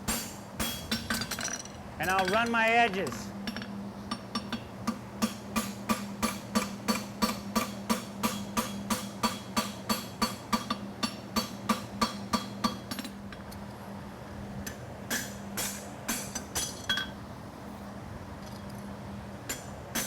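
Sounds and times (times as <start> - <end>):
hammer striking horseshoe on anvil: 0.1 - 3.2, 4.1 - 13.2, 15.1 - 17.2, 19.5 - 20.0.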